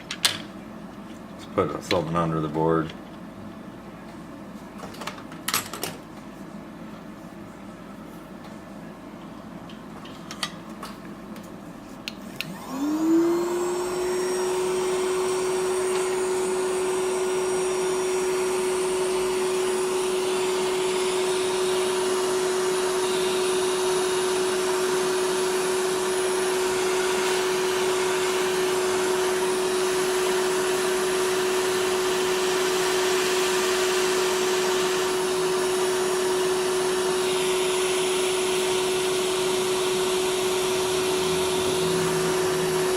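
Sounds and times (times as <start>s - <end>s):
hot air blower whining: 11.8s - 42.9s.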